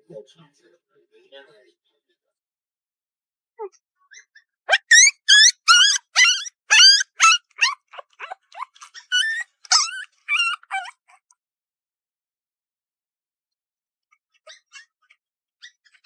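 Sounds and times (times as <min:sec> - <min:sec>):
puppy whimpering and yipping: 0:04.1 - 0:11.2.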